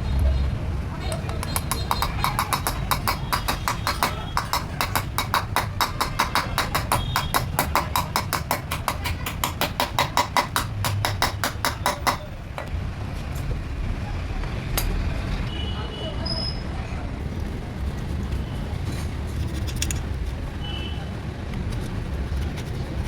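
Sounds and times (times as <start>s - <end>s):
hammer blows on metal: 1.3s - 12.3s.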